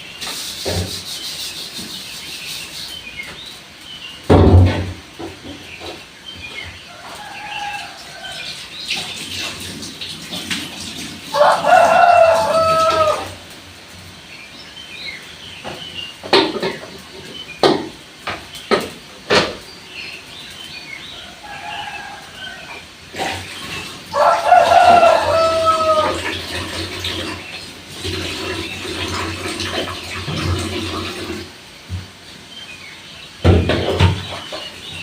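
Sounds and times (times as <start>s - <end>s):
sharp knocks: 4.3s - 6.0s
rooster crowing: 6.9s - 8.6s, 11.3s - 13.5s, 21.2s - 22.9s, 24.1s - 26.4s.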